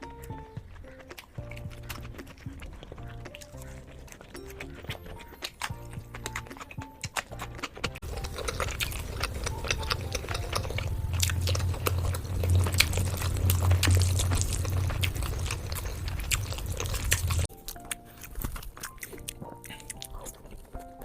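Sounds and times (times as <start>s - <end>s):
crunching bites and chewing: 0.0s - 21.0s
low steady hum: 8.0s - 17.5s.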